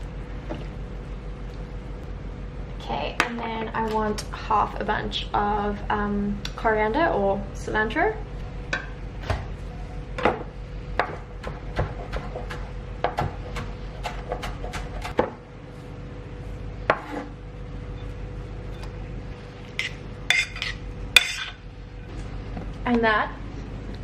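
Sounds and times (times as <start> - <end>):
steady hum: 0.0 - 24.0
knife chopping on cutting board: 11.0 - 15.4.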